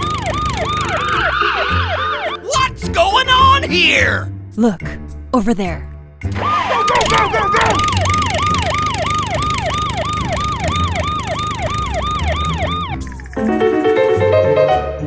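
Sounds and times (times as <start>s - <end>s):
siren wailing: 0.0s - 2.5s, 6.4s - 13.2s
music: 0.0s - 15.0s.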